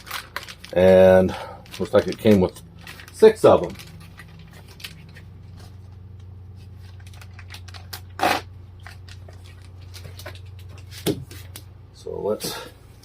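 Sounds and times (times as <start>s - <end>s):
packet rustle: 0.0s - 6.0s, 6.6s - 11.0s
wipe packets crinkling: 0.0s - 11.6s
steady low hum: 0.0s - 13.0s.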